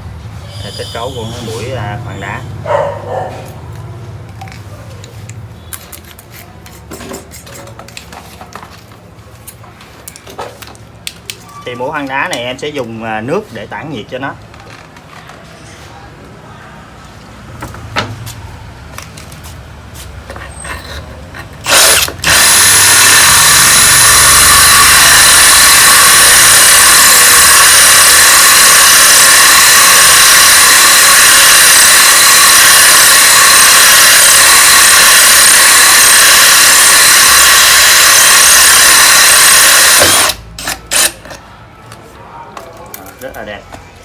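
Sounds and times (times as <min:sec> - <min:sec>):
power drill boring into stone: 0:20.4 - 0:41.2.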